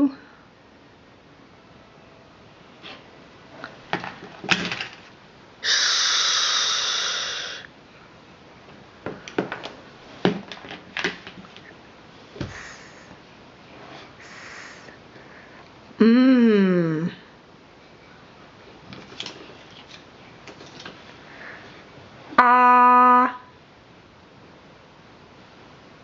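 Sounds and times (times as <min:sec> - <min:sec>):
toys dropped into basket: 0:04.0 - 0:05.0
person saying shhh: 0:05.6 - 0:07.7, 0:12.5 - 0:13.1, 0:14.2 - 0:15.0.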